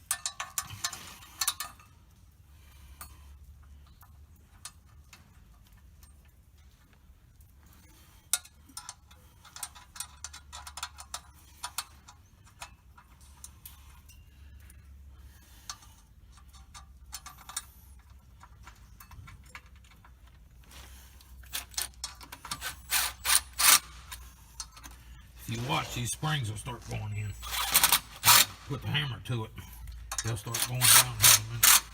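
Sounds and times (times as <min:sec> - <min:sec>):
hand tools clicking on metal: 0:00.0 - 0:01.8, 0:08.3 - 0:14.2, 0:15.6 - 0:20.1, 0:21.2 - 0:29.0, 0:29.6 - 0:31.9.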